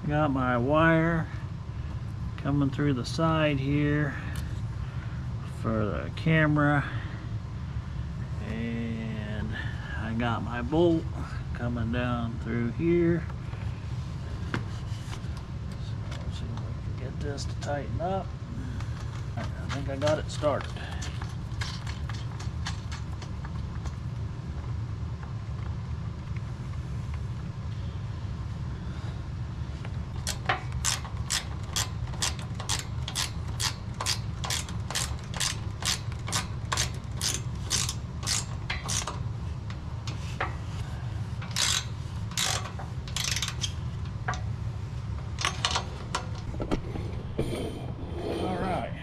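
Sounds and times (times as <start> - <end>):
ratchet wrench clicking: 20.8 - 23.2, 30.1 - 39.2, 41.4 - 44.4
steady low rumble: 36.5 - 49.0.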